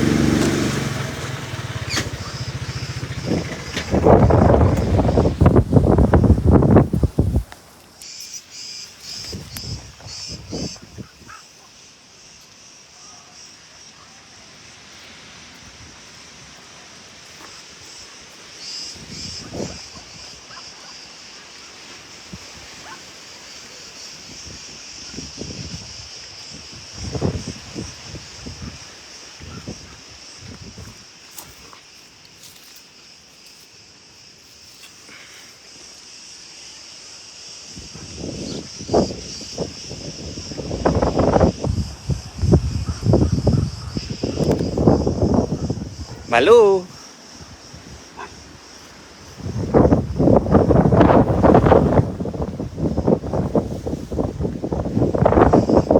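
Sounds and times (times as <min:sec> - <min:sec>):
crickets chirring: 0:00.0 - 0:55.9
insect buzz: 0:00.0 - 0:55.9
animal calls: 0:01.6 - 0:05.4
faint bird calls: 0:01.7 - 0:04.1, 0:42.7 - 0:44.8.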